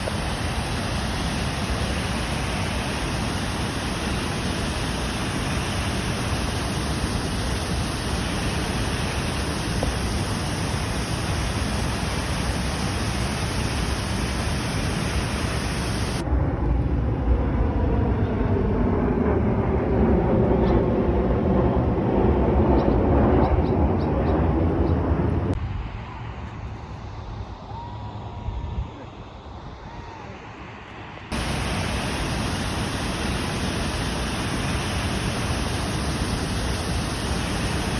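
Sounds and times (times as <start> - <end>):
waterfall rushing: 0.0 - 16.2, 31.3 - 37.9.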